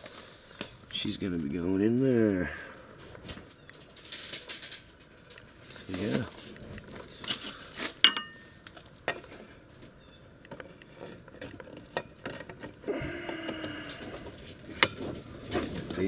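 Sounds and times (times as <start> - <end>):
metal parts clinking: 7.1 - 9.3.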